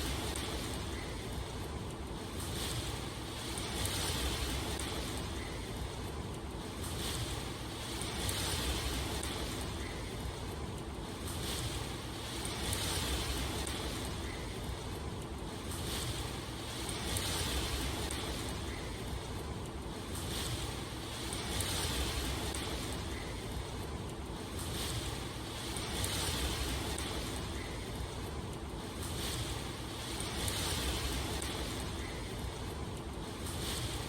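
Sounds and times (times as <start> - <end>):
rushing water: 0.0 - 34.0.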